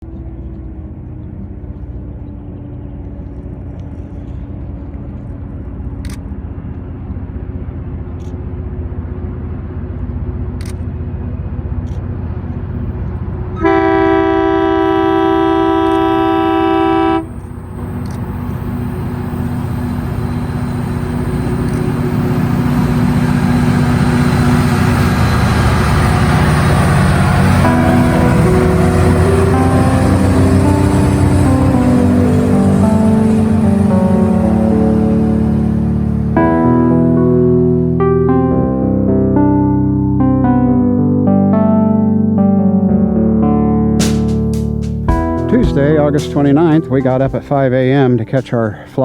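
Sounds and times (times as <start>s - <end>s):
train engine rumble: 0.0s - 49.0s
train horn blast: 13.5s - 17.9s, 21.4s - 37.2s.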